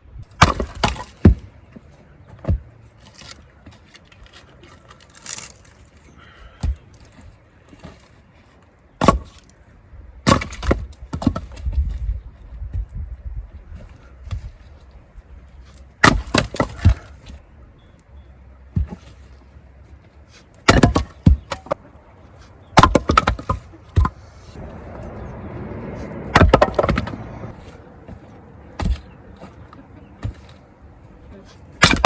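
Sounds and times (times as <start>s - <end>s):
wood splintering: 0.3s - 1.5s, 2.4s - 8.2s, 9.0s - 9.6s, 10.2s - 11.8s, 15.7s - 17.4s, 20.6s - 21.8s, 22.4s - 24.6s, 26.1s - 30.7s, 31.5s - 32.0s
splitting maul striking firewood: 0.3s - 1.6s, 4.2s - 8.1s, 9.0s - 9.5s, 10.2s - 11.9s, 16.0s - 17.4s, 18.7s - 19.2s, 20.6s - 21.8s, 22.6s - 24.3s, 26.2s - 30.6s, 31.6s - 32.0s.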